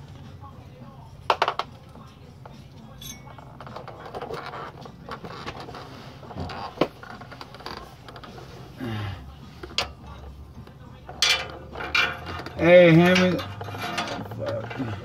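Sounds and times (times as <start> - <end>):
metal clicks and scrapes: 11.0 - 15.0.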